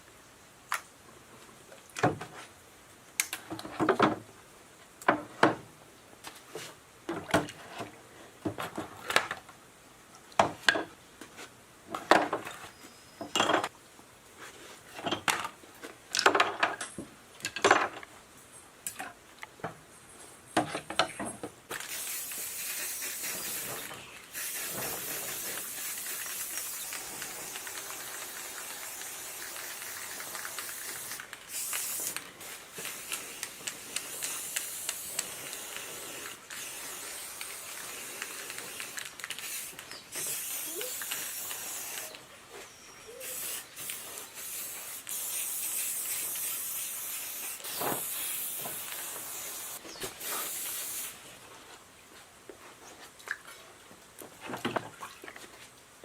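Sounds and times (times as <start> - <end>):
steady hiss: 19.7 - 53.0.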